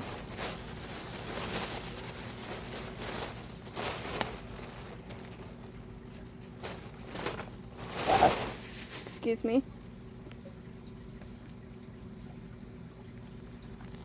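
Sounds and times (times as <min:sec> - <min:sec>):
packaging rustling and crinkling: 0:00.0 - 0:09.2.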